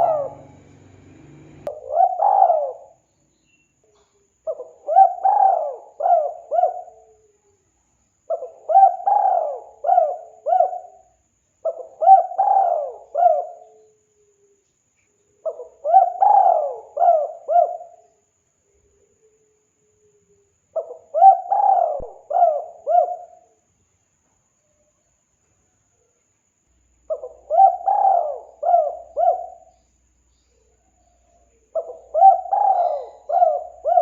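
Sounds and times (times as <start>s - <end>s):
dove cooing: 0.0s - 3.0s, 4.5s - 7.3s, 8.3s - 14.0s, 15.4s - 18.1s, 20.8s - 23.5s, 27.1s - 29.8s, 30.5s - 34.0s.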